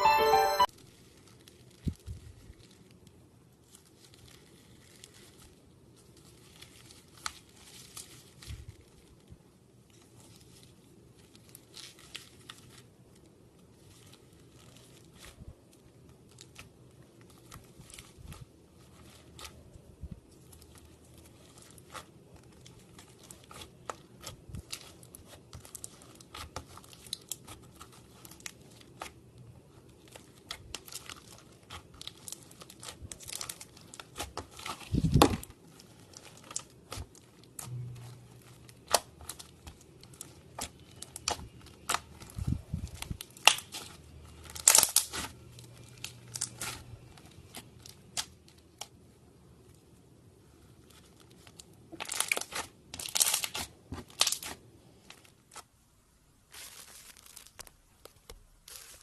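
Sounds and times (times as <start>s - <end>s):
slime crackling and clicking: 38.6s - 42.4s.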